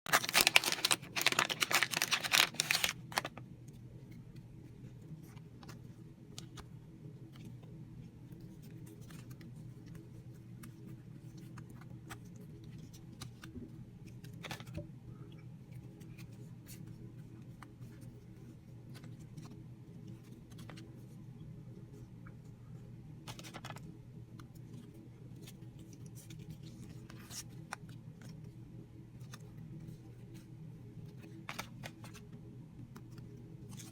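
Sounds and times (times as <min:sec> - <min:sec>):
cards clicking and rustling: 0:00.1 - 0:03.4, 0:23.3 - 0:23.8, 0:31.2 - 0:32.2
foil pack crinkling: 0:00.1 - 0:03.4.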